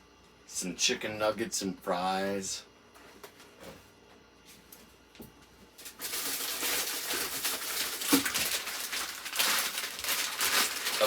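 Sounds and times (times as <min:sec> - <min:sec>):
plastic packaging crinkling: 0:05.8 - 0:11.0.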